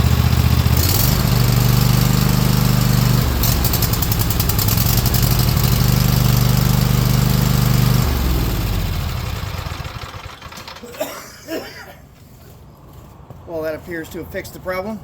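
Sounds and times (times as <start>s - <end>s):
lawn tractor engine running: 0.0s - 11.0s.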